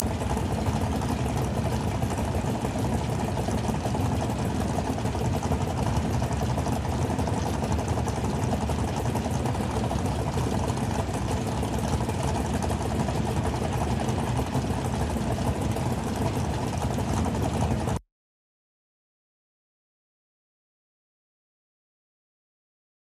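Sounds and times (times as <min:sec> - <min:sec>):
dragster engine idling: 0:00.0 - 0:18.0.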